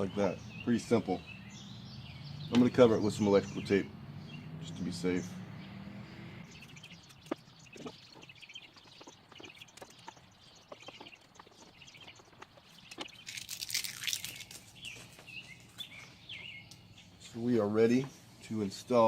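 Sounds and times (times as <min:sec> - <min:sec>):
electrical tape unrolling: 0:12.8 - 0:15.2.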